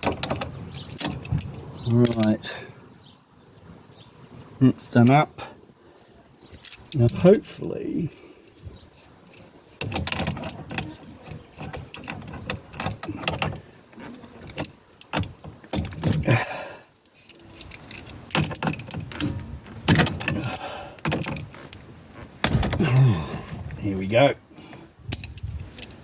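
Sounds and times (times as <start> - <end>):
metallic clinks of hand tools: 0.0 - 2.3, 14.4 - 21.6.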